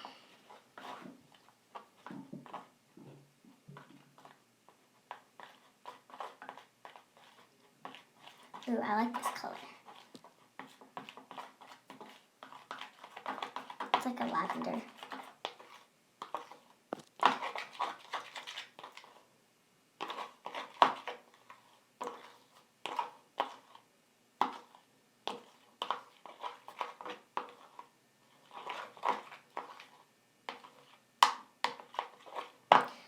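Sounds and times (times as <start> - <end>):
spoon stirring in bowl: 0.0 - 2.7, 3.8 - 19.2, 20.0 - 33.0.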